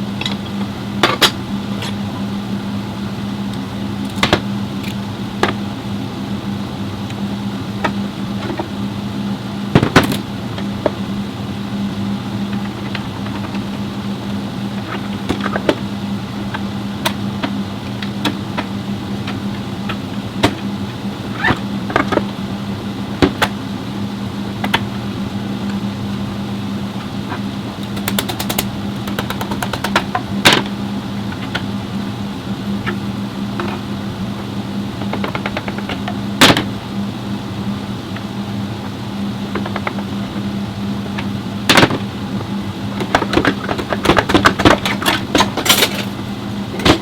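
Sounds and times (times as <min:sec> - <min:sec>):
low machine hum: 0:00.0 - 0:47.0
hand tools clicking and knocking: 0:27.8 - 0:30.2.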